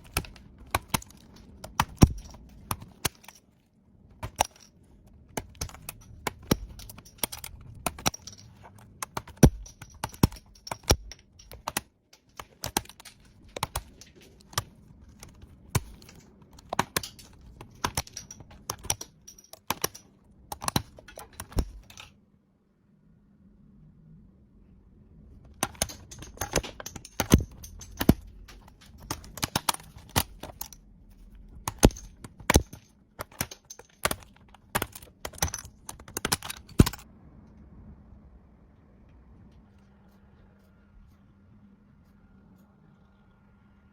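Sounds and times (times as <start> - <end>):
laptop keyboard keys clicking: 0.0 - 3.4, 5.3 - 22.1, 25.5 - 30.8, 31.4 - 37.1.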